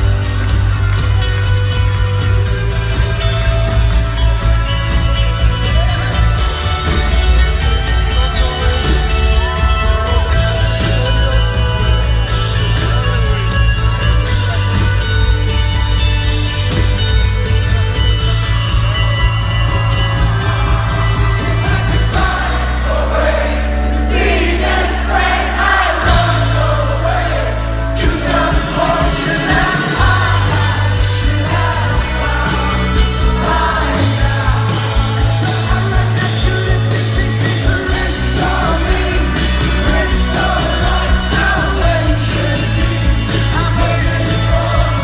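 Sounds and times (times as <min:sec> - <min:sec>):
rock band playing live: 0:00.0 - 0:45.0
sustained bass notes: 0:00.0 - 0:45.0
lead vocalist singing: 0:05.4 - 0:14.9, 0:20.5 - 0:45.0.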